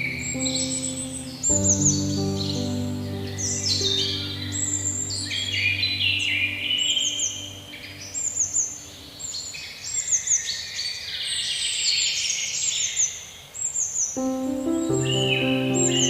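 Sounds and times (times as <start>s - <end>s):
soft sustained music: 0.0s - 9.4s, 14.2s - 16.0s.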